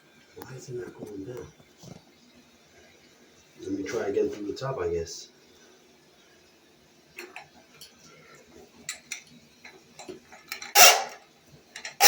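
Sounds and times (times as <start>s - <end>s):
tools clicking and knocking: 8.9s - 11.2s, 11.8s - 12.0s.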